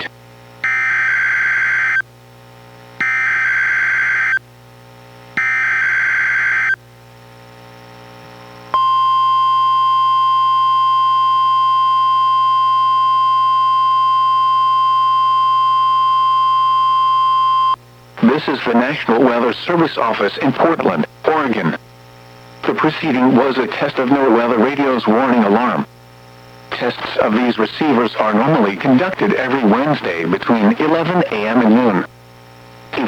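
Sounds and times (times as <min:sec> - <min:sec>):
steady alarm tone: 0:00.0 - 0:02.0, 0:03.0 - 0:04.4, 0:05.4 - 0:06.8, 0:08.8 - 0:17.8.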